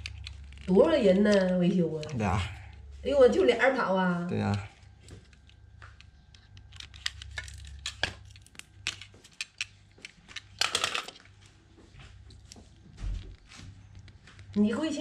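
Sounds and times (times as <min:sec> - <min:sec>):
small objects clicking: 0:00.0 - 0:02.4.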